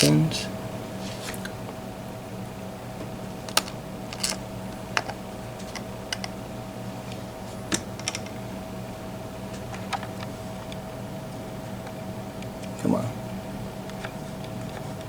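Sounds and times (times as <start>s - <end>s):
steady hum: 0.0s - 15.0s
small metal parts clicking: 3.5s - 4.4s.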